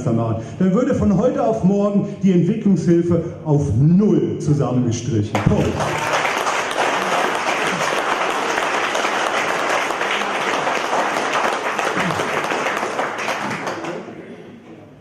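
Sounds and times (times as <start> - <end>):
crowd applauding: 5.4 - 14.2.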